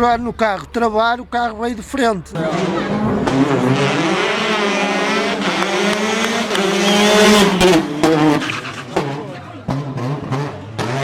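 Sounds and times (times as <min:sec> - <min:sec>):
rally car engine revving: 0:02.4 - 0:11.0.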